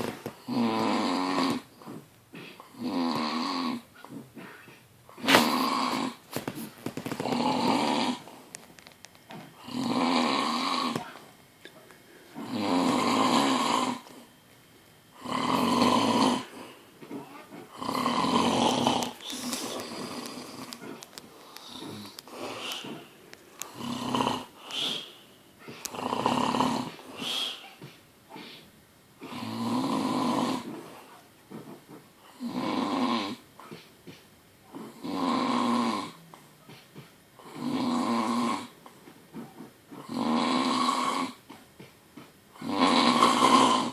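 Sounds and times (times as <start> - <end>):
person snoring loudly: 0.4 - 2.0, 2.6 - 3.9, 5.2 - 6.2, 7.1 - 8.3, 9.6 - 11.0, 12.4 - 14.0, 15.2 - 16.6, 17.7 - 20.8, 21.6 - 23.0, 23.7 - 25.2, 25.9 - 27.6, 29.2 - 30.9, 32.3 - 33.4, 34.7 - 36.2, 37.4 - 38.7, 40.0 - 41.4, 42.6 - 43.9.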